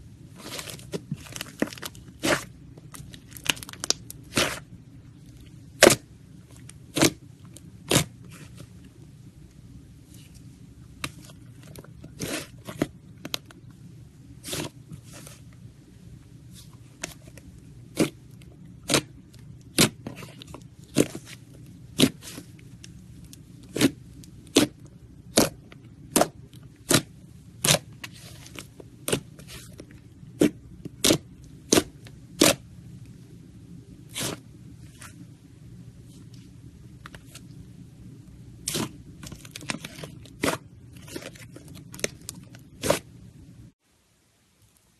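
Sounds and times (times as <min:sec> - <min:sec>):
low steady hum: 0:00.0 - 0:44.9
slime popping and crackling: 0:00.4 - 0:04.6.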